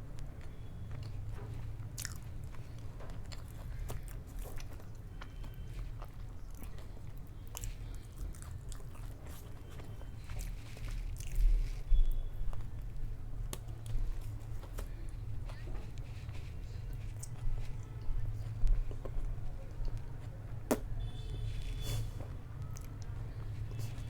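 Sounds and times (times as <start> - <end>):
person chewing crunchy food: 0.9 - 12.8.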